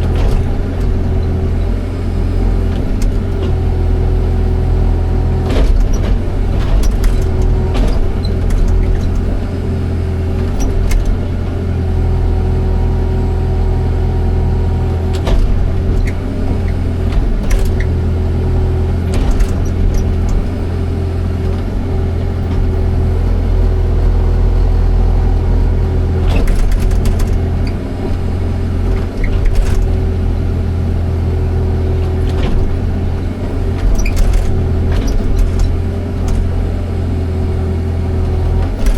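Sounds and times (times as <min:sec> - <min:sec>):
excavator diesel engine running: 0:00.0 - 0:38.9
short knocks and clanks: 0:05.4 - 0:09.6, 0:15.0 - 0:18.2, 0:18.8 - 0:23.3, 0:26.1 - 0:30.1, 0:32.0 - 0:36.7.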